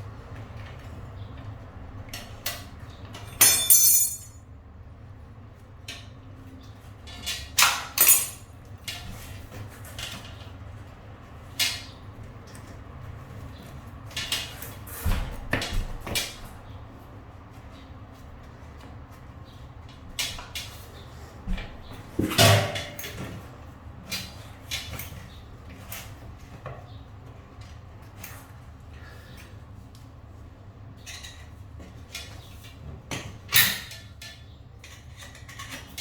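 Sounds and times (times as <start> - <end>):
metal tools clinking and knocking: 3.2 - 4.4, 7.1 - 8.5
ringing metallic clink: 3.4 - 4.4.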